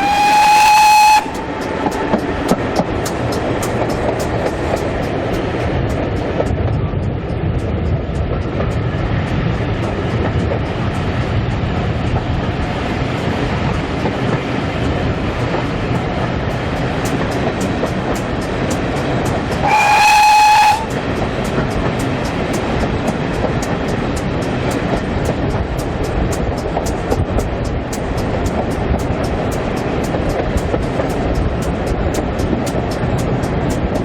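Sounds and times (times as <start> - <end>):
steam whistle: 0.0 - 2.3, 19.6 - 21.0
steam train running: 0.0 - 34.0.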